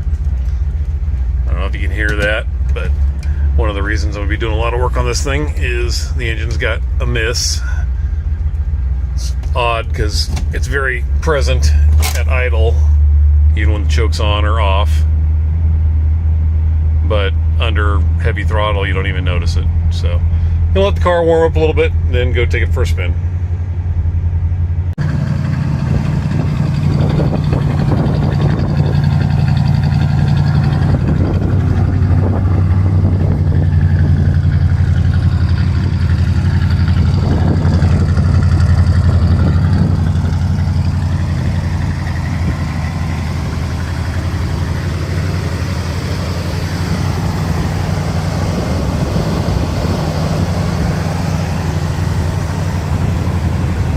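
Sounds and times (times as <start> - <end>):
car engine idling with a miss: 0.0 - 13.5, 23.2 - 53.9.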